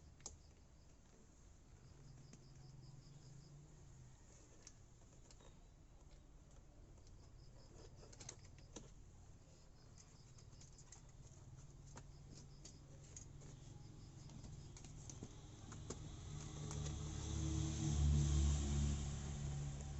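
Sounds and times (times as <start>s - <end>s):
faint clicks and taps: 9.9s - 17.0s
low hum: 15.2s - 19.9s.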